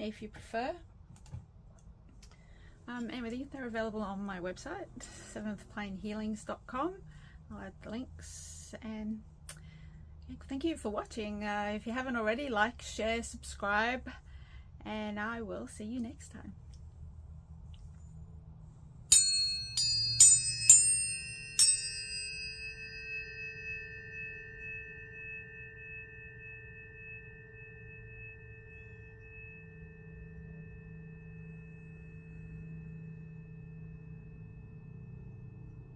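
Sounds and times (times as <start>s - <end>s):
tuning forks ringing: 19.1s - 35.9s.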